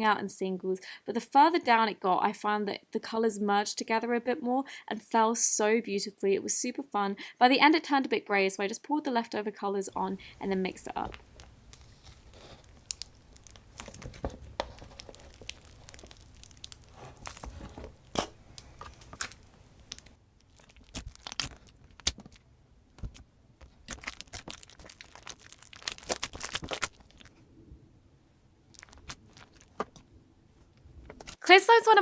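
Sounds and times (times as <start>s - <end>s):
slime crackling and popping: 10.8s - 27.4s, 28.7s - 30.0s.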